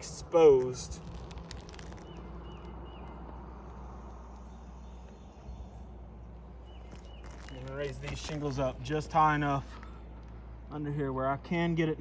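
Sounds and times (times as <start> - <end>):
low outdoor rumble: 0.0 - 12.0
small bird chirping: 1.8 - 3.2, 4.4 - 8.4.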